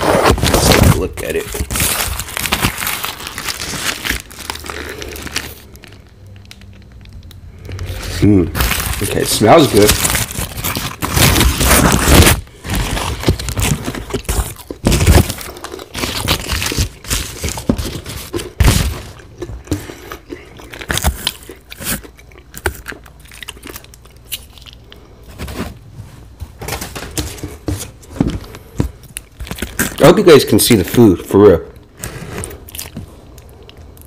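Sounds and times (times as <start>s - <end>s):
paper wrapping crinkling: 0.0s - 7.2s, 7.8s - 31.2s.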